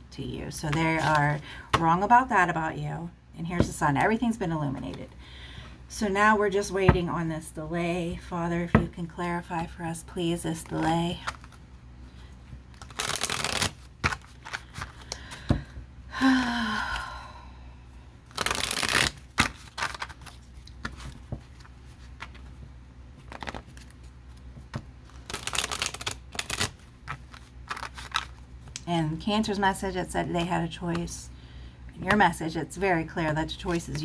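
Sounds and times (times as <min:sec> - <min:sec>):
cards riffling: 0:12.7 - 0:15.2, 0:18.3 - 0:21.1, 0:25.1 - 0:28.8.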